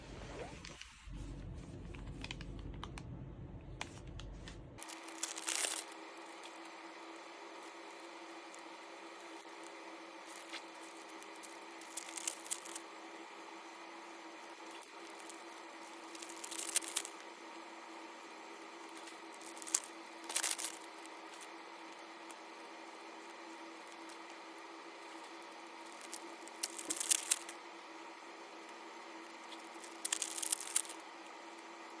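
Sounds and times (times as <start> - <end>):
steady low hum: 0.0 - 32.0
card packs tearing and rustling: 4.8 - 6.6, 10.3 - 12.8, 14.7 - 17.2, 18.9 - 21.5, 25.1 - 27.6, 29.4 - 31.0.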